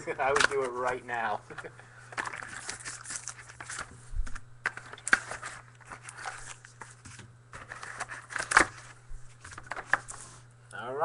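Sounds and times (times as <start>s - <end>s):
plastic wrap crinkling and tearing: 2.2s - 3.9s, 4.6s - 10.2s.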